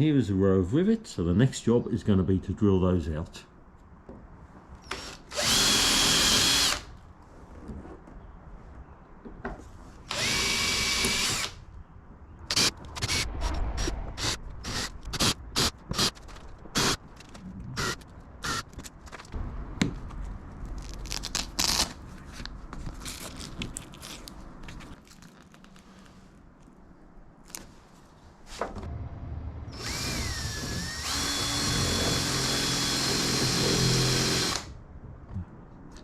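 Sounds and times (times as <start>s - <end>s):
power drill drilling rivets: 10.1s - 11.6s.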